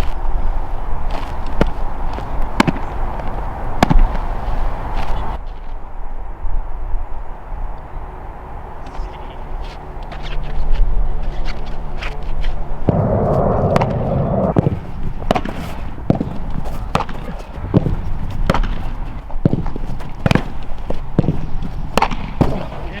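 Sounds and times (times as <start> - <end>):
dense burst of noise: 12.9 - 14.9.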